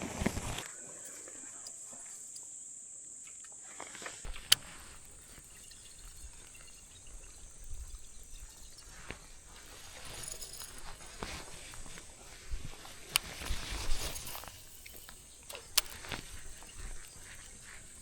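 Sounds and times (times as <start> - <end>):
high insect drone: 0.0 - 18.0
sharp click: 13.0 - 18.0.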